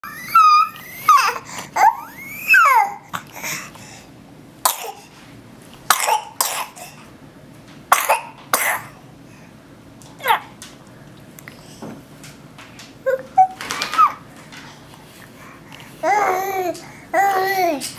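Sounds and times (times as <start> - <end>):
person coughing: 5.9 - 7.0, 7.9 - 9.0.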